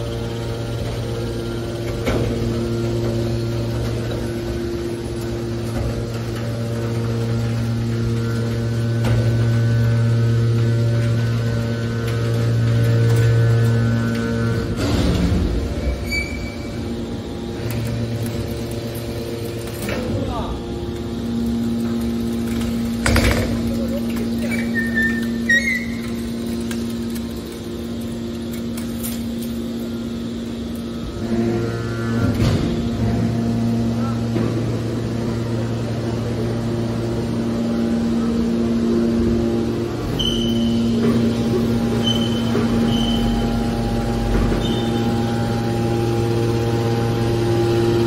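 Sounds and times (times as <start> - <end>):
deeper machine hum: 0.0 - 48.0
scrap baler machine hum: 0.0 - 48.0
high squeaks: 24.4 - 26.2, 40.1 - 40.9.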